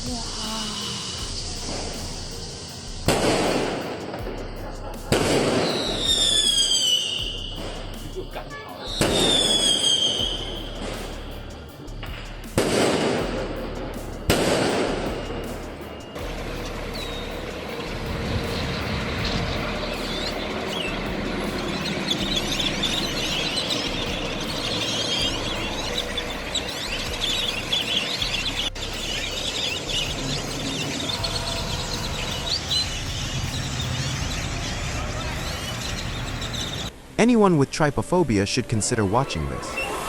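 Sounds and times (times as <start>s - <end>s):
birds chirping and chattering: 4.6s - 12.5s, 15.2s - 36.9s
low rumbling noise: 10.3s - 37.4s.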